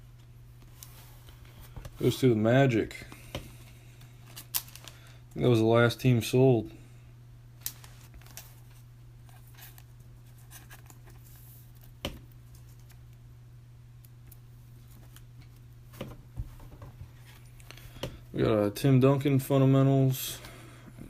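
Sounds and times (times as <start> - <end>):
steady low hum: 0.0 - 21.0
card packs crinkling: 4.2 - 5.2.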